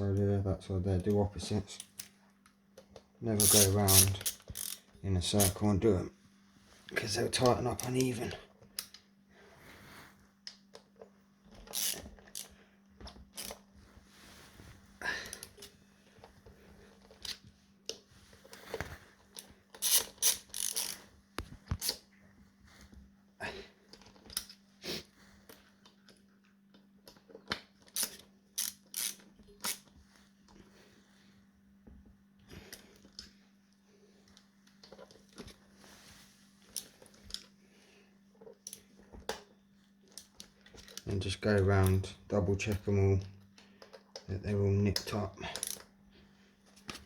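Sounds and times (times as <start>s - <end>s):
faint steady hum: 0.0s - 47.0s
ratchet wrench clicking: 3.4s - 4.8s, 11.7s - 12.5s, 19.8s - 21.0s, 28.0s - 29.8s.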